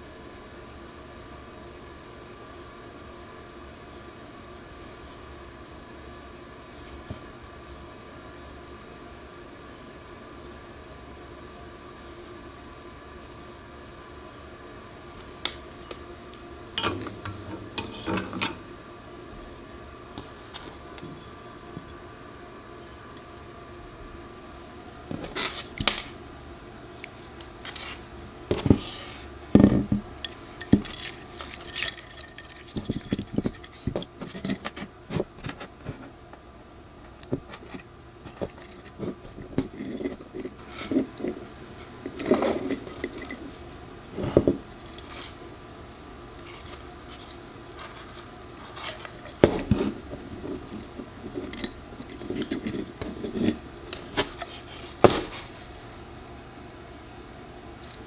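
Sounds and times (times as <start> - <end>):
small hard parts clicking and scraping: 15.2 - 18.7, 25.1 - 45.6, 46.2 - 55.8.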